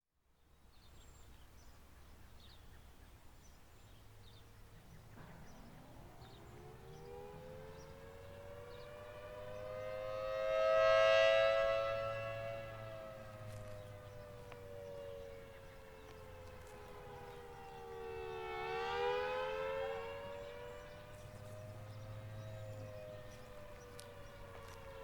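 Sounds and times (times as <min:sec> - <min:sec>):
siren wailing: 0:05.5 - 0:25.0.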